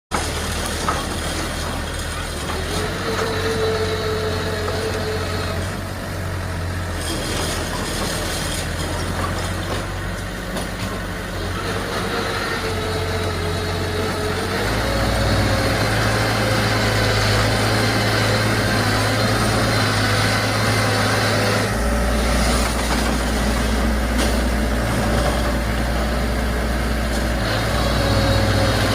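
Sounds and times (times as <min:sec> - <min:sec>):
bulldozer diesel engine running: 0:00.0 - 0:28.9.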